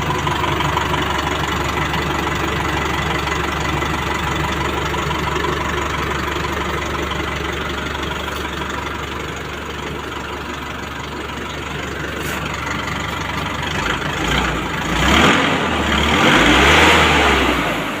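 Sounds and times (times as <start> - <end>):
diesel truck engine idling: 0.0 - 18.0
engine revving: 11.8 - 18.0.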